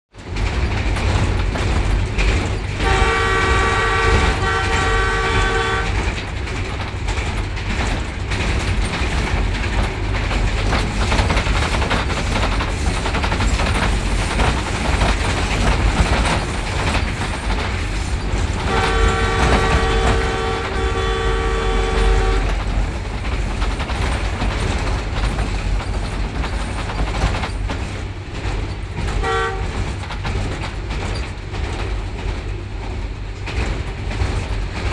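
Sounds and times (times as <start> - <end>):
train rumbling on track: 0.1 - 34.9
locomotive horn blasts: 2.8 - 6.1, 18.6 - 22.6, 29.2 - 29.9.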